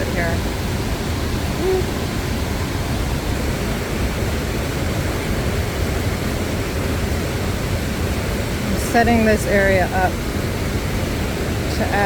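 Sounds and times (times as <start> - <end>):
river water rushing over rocks: 0.0 - 12.0.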